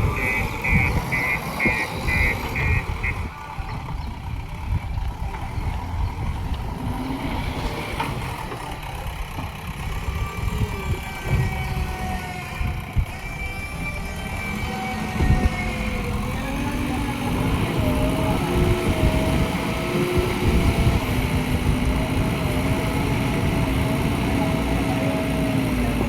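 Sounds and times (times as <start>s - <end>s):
reversing alarm beeping: 0.0s - 3.3s
diesel engine rumbling under load: 0.0s - 26.0s.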